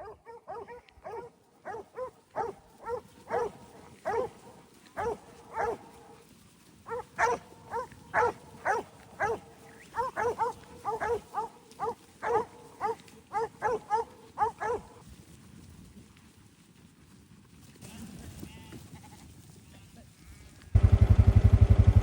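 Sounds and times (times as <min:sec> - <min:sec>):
dog barking sharply: 0:00.0 - 0:04.4, 0:05.0 - 0:05.8, 0:06.9 - 0:09.4, 0:10.0 - 0:14.9.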